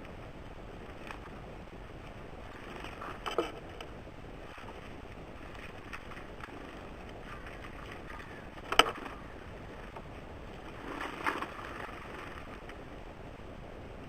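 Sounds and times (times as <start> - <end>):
birds tapping on wooden feeder: 7.6 - 9.2.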